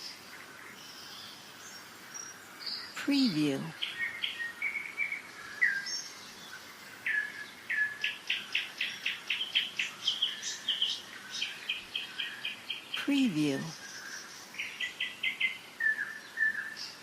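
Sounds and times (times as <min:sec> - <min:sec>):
songbirds whistling: 0:03.8 - 0:13.0, 0:13.7 - 0:17.0.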